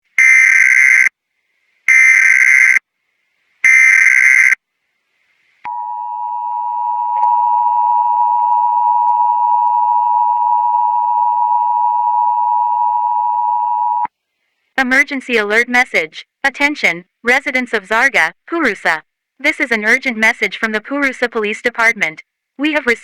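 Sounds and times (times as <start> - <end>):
screechy digital data bursts: 0.2 - 1.1, 1.9 - 2.8, 3.6 - 4.6
two-tone attention signal: 5.7 - 14.1.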